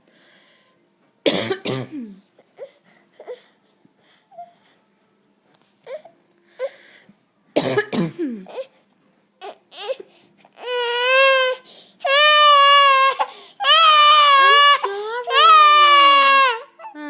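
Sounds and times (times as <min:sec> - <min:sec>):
adult coughing: 0:01.3 - 0:02.2, 0:07.6 - 0:08.5
baby crying: 0:09.4 - 0:17.0.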